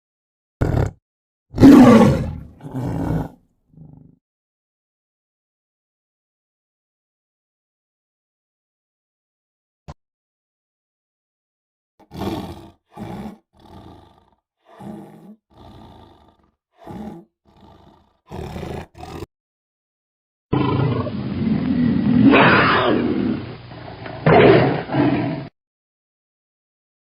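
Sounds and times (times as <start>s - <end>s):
tiger growls and grunts: 0.6s - 1.0s, 1.6s - 4.2s, 12.0s - 19.3s, 20.5s - 25.5s
tiger roaring: 0.6s - 1.0s, 1.6s - 4.2s, 12.0s - 19.3s, 20.5s - 25.5s.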